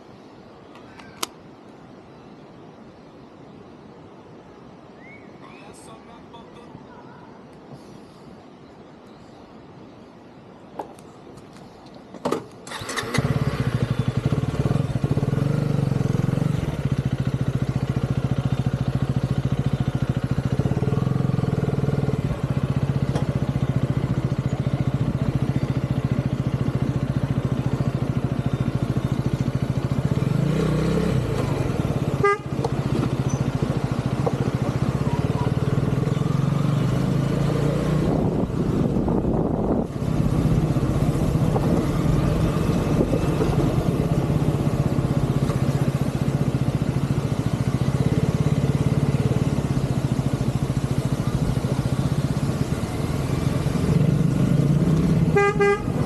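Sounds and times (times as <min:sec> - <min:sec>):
motorcycle engine running: 0:12.7 - 0:56.0.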